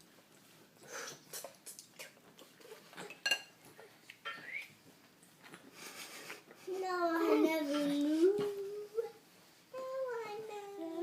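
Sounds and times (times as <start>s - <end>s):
dishware clicking and knocking: 3.0s - 3.5s.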